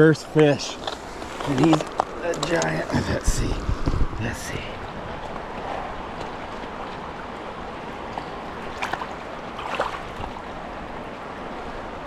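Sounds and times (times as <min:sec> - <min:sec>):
river water running: 0:00.0 - 0:12.0
water splashes: 0:04.8 - 0:10.8.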